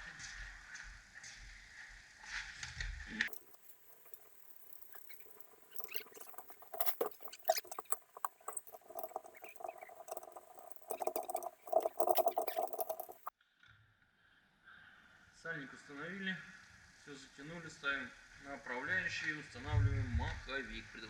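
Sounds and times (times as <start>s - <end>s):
hand tools clicking and rattling: 3.3s - 13.3s.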